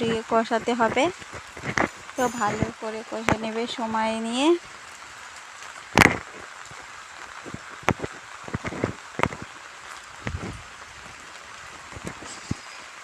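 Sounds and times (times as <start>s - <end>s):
heavy rain hissing: 0.0s - 13.0s.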